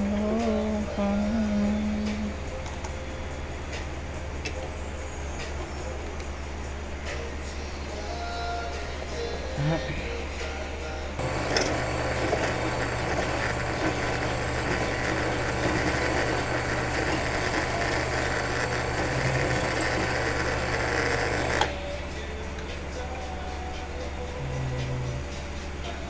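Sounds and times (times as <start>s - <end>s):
power drill drilling into steel: 11.2s - 21.7s.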